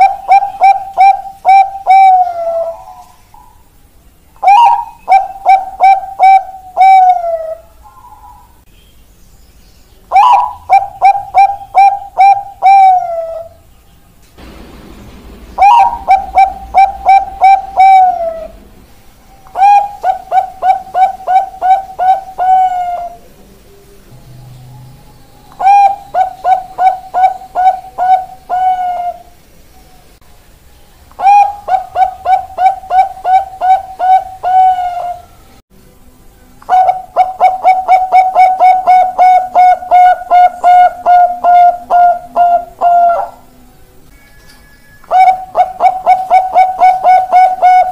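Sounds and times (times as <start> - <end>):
dove cooing: 0.0 - 3.7, 4.4 - 8.6, 10.1 - 13.7, 15.6 - 18.7, 19.4 - 23.4, 24.4 - 29.4, 31.2 - 35.5, 36.7 - 43.5, 45.0 - 47.9.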